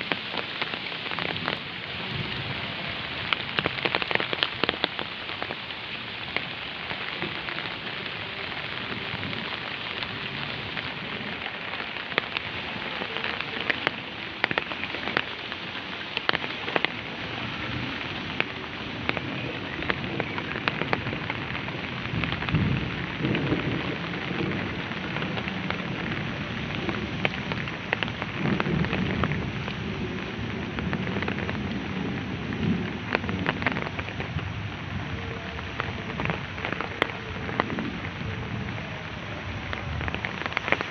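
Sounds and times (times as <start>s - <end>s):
heavy rain falling: 0.0s - 40.9s
sharp raindrops tapping: 0.0s - 40.9s.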